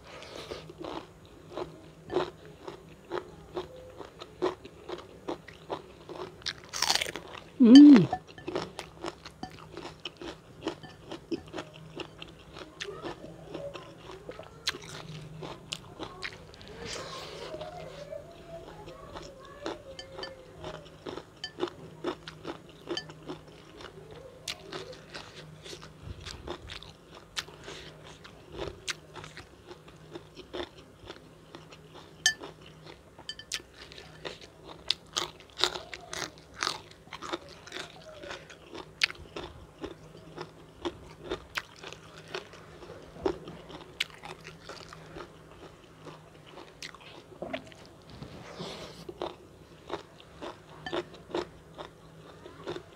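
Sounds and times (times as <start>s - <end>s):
crunchy bites and wet chewing: 0.3s - 13.2s.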